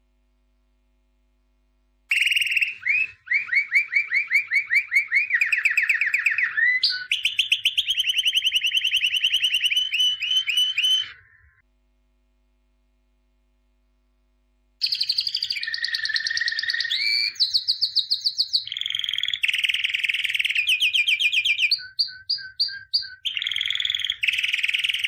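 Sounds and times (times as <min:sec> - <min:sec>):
songbird whistling song: 0:02.1 - 0:11.6, 0:14.8 - 0:25.0.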